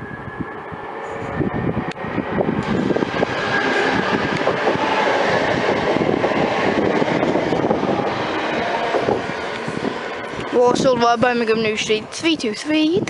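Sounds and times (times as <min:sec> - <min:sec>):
electric train rail rumble: 0:00.0 - 0:13.0.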